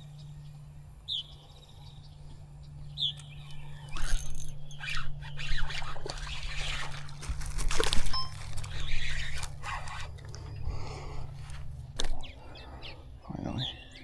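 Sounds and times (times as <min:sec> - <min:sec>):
low hum: 0:00.0 - 0:14.0
scraping and rustling: 0:05.0 - 0:12.4
high bird chirps: 0:08.0 - 0:11.3.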